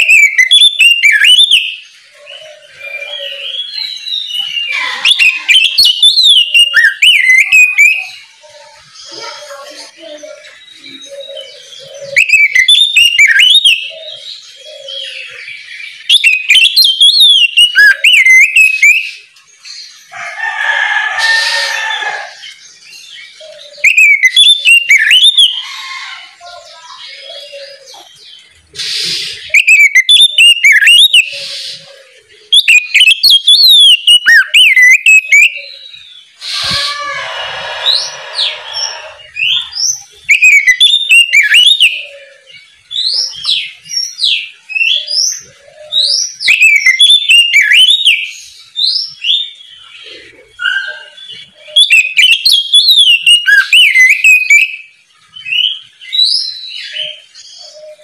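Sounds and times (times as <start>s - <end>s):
bird singing whistled phrases: 0.0s - 8.5s, 10.4s - 19.3s, 23.4s - 25.6s, 28.8s - 31.9s, 32.5s - 49.6s, 50.6s - 54.9s
harsh low bird call: 36.4s - 42.5s.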